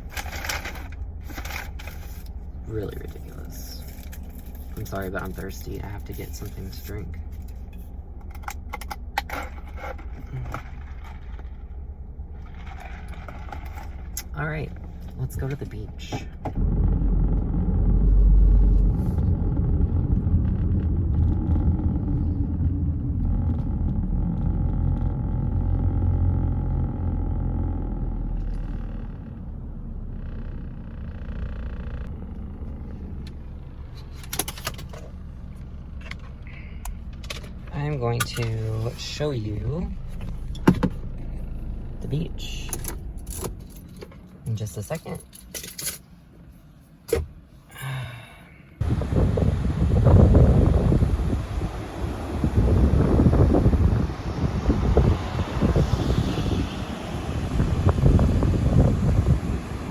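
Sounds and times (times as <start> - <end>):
sharp clicks and rattles: 0.0 - 11.6, 12.4 - 27.7, 30.1 - 46.1
car cabin hum: 0.0 - 47.7, 48.7 - 59.9.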